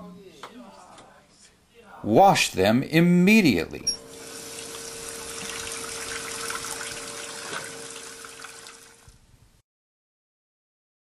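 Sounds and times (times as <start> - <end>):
faint steady hum: 0.0 - 9.6
tap water running into sink: 4.1 - 9.2.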